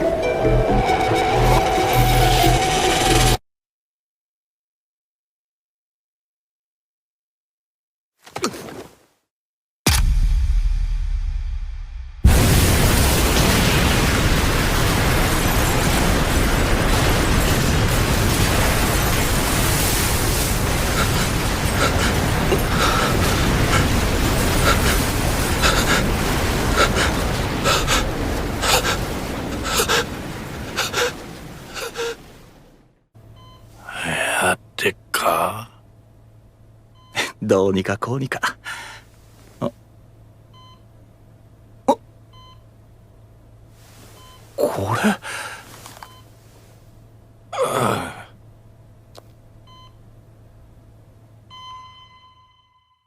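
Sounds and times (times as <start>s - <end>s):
deep rumble: 9.9s - 31.7s
low steady hum: 10.0s - 53.0s
person gasping for breath: 20.9s - 23.9s, 25.6s - 26.1s, 26.8s - 30.1s, 30.7s - 32.2s, 38.6s - 39.1s, 44.9s - 45.7s
person sighing: 30.7s - 32.2s, 33.8s - 34.5s, 44.6s - 45.7s, 47.6s - 48.4s.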